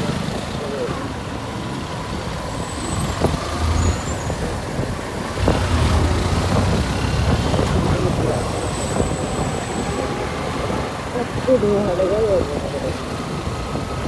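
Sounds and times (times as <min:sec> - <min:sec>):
road and wind noise: 0:00.0 - 0:14.0
motorcycle engine running: 0:04.0 - 0:09.1.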